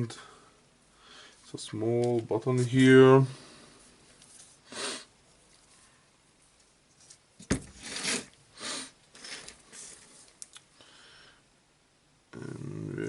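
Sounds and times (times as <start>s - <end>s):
scraping and rubbing: 6.9s - 10.3s.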